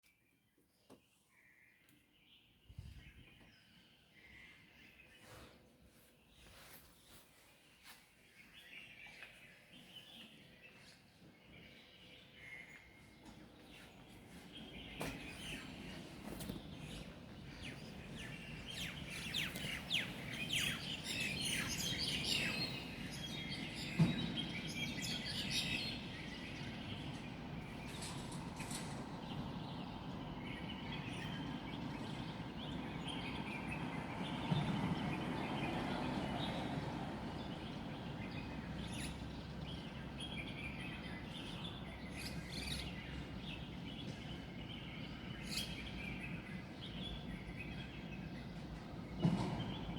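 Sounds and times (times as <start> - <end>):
birds chirping in dawn chorus: 14.5 - 35.3.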